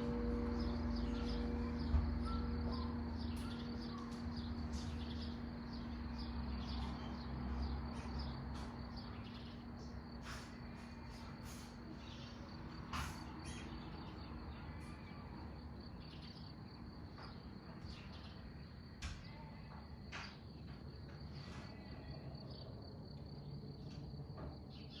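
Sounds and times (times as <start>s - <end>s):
church bells humming: 0.0s - 3.3s
small birds chirping: 0.0s - 25.0s.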